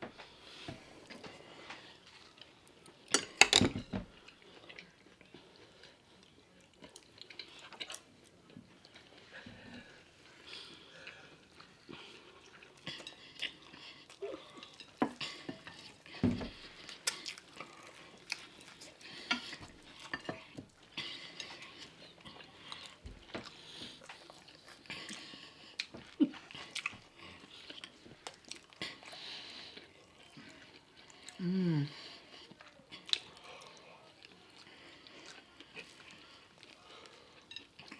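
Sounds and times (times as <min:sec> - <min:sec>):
close-up chewing: 0:00.2 - 0:37.9
cutlery and dishes clinking: 0:03.1 - 0:04.0.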